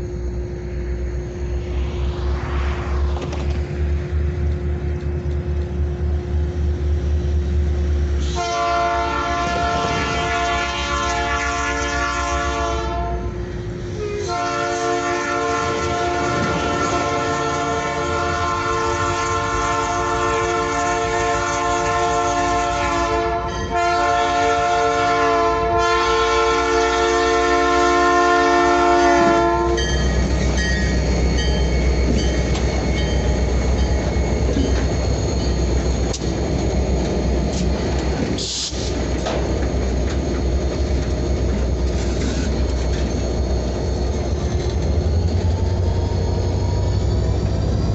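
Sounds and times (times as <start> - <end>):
diesel engine rumbling: 0.0 - 8.2
locomotive air horn blasts: 8.2 - 13.4, 14.0 - 29.9.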